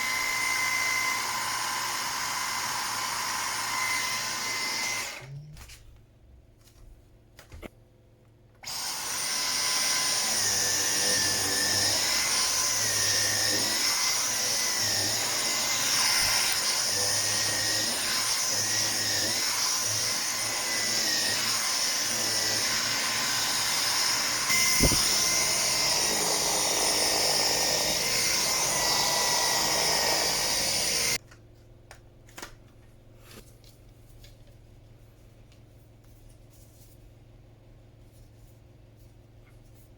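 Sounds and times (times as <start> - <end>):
stick vacuum motor whine: 0.0 - 5.4, 8.6 - 31.2.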